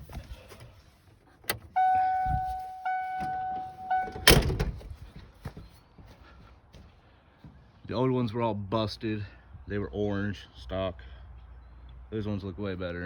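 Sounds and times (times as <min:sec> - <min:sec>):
truck door slamming: 0:01.5 - 0:05.0
electronic warning tone: 0:01.8 - 0:04.3.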